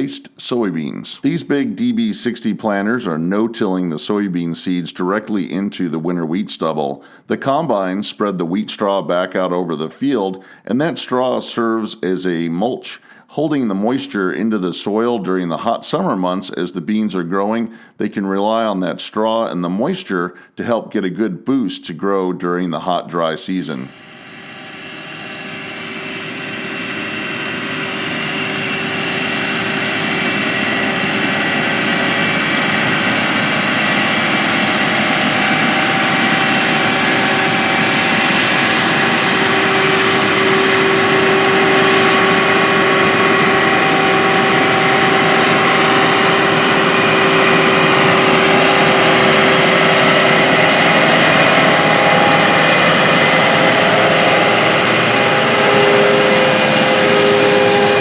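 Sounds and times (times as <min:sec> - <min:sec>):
machine whine: 0:23.9 - 0:58.0
diesel machinery engine running: 0:24.0 - 0:58.0.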